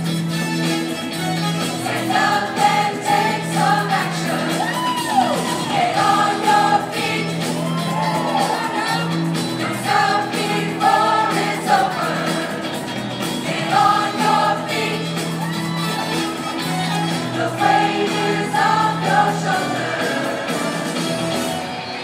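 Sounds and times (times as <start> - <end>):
backing accompaniment: 0.0 - 22.0
group singing in unison: 1.8 - 8.0, 9.5 - 15.5, 17.1 - 21.4.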